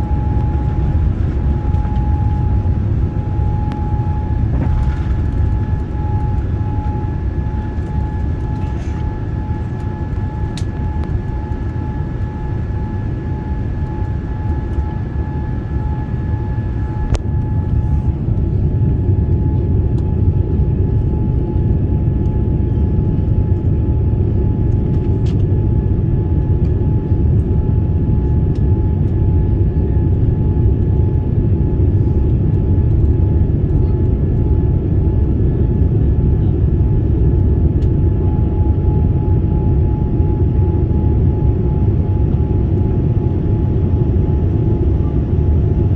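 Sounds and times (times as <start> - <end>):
faint steady whine: 0.0 - 25.8
engine and airflow rumble: 0.0 - 45.9.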